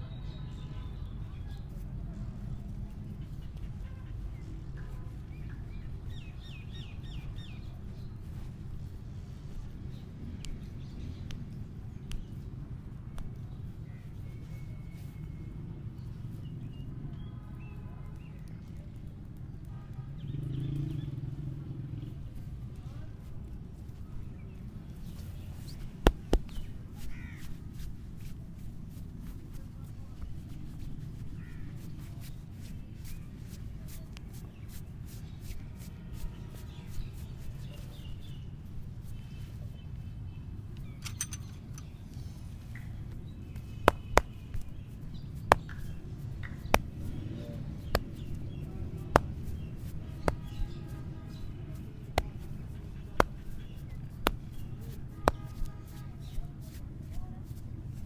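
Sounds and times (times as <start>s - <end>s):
hand slaps and claps: 10.4s - 12.4s, 25.2s - 28.4s, 43.6s - 44.8s, 45.4s - 56.8s
faint bird calls: 26.4s - 27.6s.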